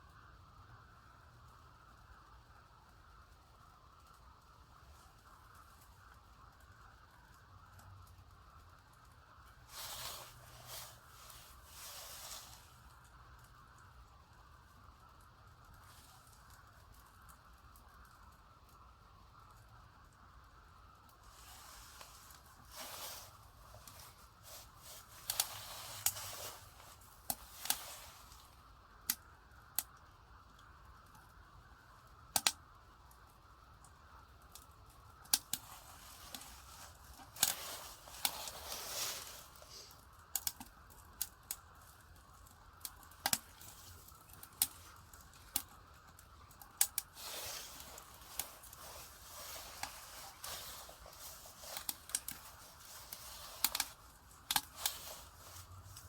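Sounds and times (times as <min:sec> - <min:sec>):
firewood crackling in a stove: 0:00.0 - 0:56.0
short rustling: 0:09.7 - 0:12.9, 0:21.2 - 0:28.6, 0:35.6 - 0:40.0, 0:47.0 - 0:56.0.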